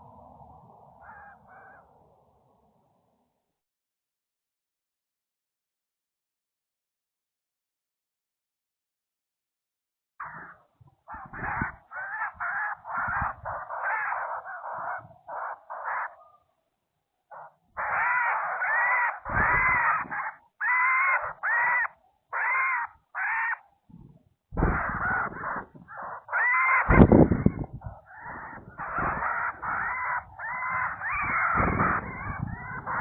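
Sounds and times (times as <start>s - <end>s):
bird giving harsh calls: 10.2s - 16.2s, 17.3s - 23.6s, 24.6s - 33.0s
deep rumbling thumps: 23.9s - 25.9s, 26.9s - 28.0s.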